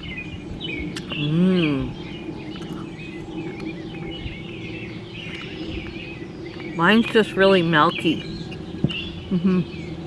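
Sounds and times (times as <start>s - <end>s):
small birds chirping: 0.0s - 10.0s
person humming: 1.2s - 2.0s.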